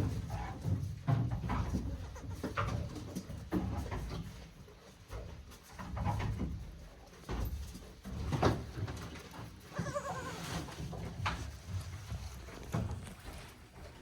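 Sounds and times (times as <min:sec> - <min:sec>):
bumps and rustling of movement: 0:00.0 - 0:14.0
goat kid bleating: 0:09.7 - 0:10.7.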